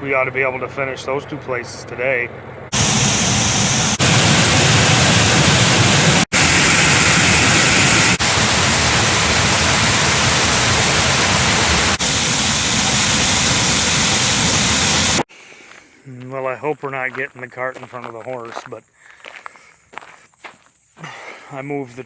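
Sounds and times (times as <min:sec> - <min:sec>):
loud steady rushing noise: 0:02.7 - 0:15.2.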